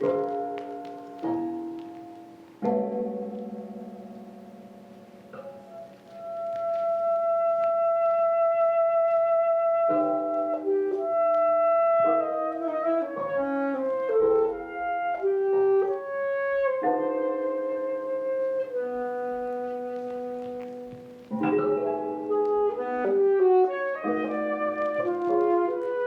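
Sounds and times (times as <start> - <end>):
wind ensemble playing: 6.2 - 16.9, 17.7 - 20.6, 21.7 - 26.0.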